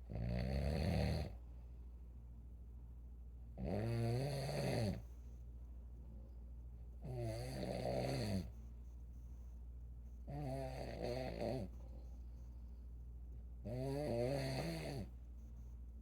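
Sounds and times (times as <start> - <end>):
steady low hum: 1.2 - 16.0
person snoring: 13.7 - 15.1.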